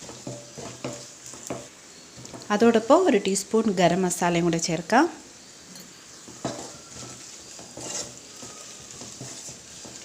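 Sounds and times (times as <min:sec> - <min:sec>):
spoon scraping a pan: 0:00.0 - 0:02.5, 0:05.8 - 0:10.0
food sizzling in oil: 0:00.0 - 0:10.0.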